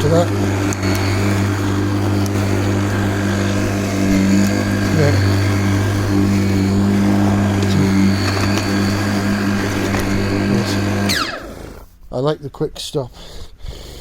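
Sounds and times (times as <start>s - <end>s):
electric lawnmower humming: 0.0s - 11.9s.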